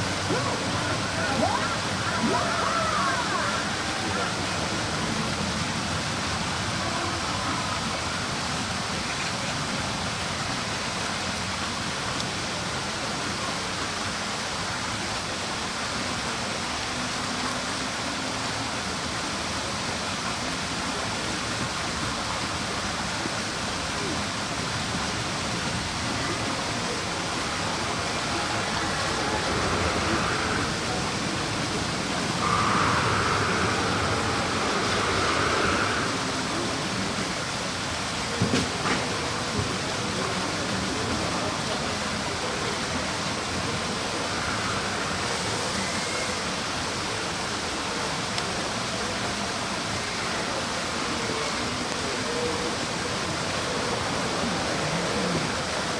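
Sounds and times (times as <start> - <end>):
steady rushing noise: 19.8 - 55.9.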